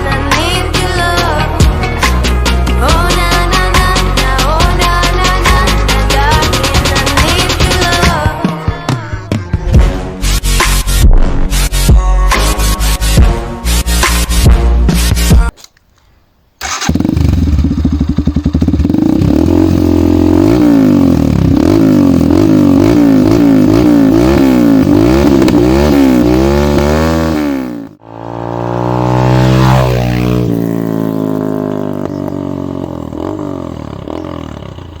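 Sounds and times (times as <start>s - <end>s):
motorcycle engine revving: 16.6s - 35.0s.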